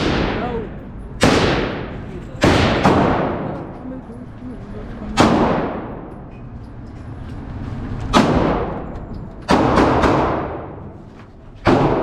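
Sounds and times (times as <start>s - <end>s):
gunshots with long echo: 0.0s - 3.7s, 5.2s - 6.2s, 8.1s - 8.8s, 9.5s - 11.0s, 11.6s - 12.0s.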